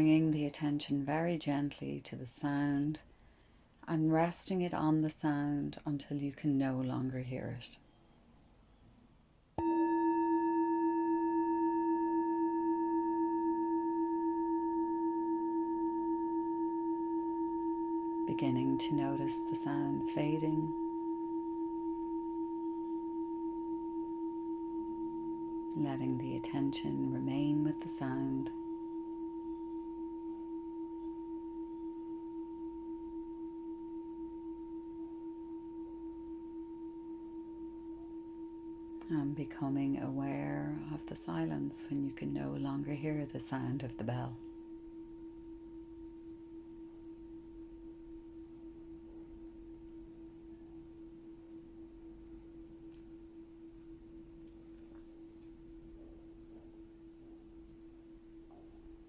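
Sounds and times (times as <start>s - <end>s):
meditation bell ringing: 9.6s - 39.1s.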